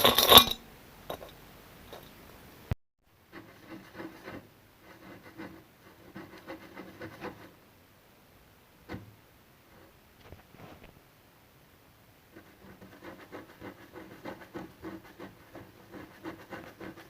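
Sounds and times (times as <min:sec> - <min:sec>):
rubbing and scratching strokes: 0:03.2 - 0:07.6, 0:08.8 - 0:11.0, 0:12.3 - 0:17.0.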